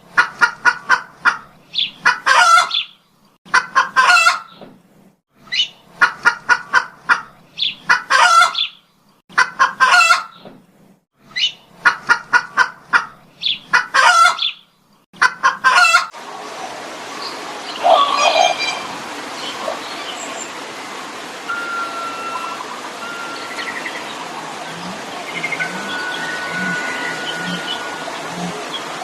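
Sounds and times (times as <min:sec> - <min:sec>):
chicken clucking and calling: 0:00.2 - 0:04.6, 0:05.5 - 0:10.4, 0:11.4 - 0:14.6, 0:15.2 - 0:16.1, 0:24.7 - 0:28.8.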